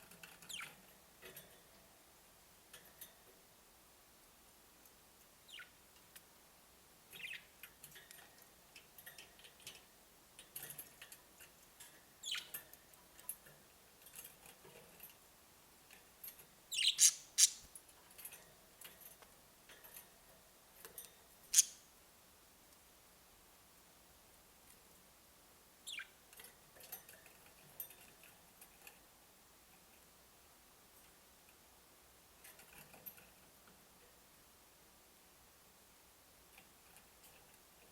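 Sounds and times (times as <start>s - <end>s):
budgerigars chirping: 16.7s - 17.6s.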